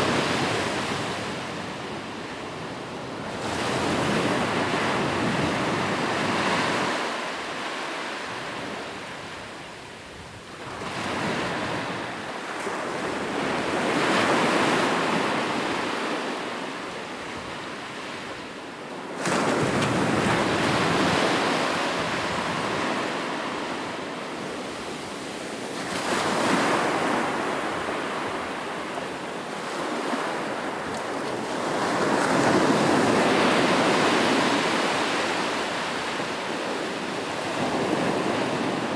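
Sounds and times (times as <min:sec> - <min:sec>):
waves breaking on a beach: 0:00.0 - 0:38.9.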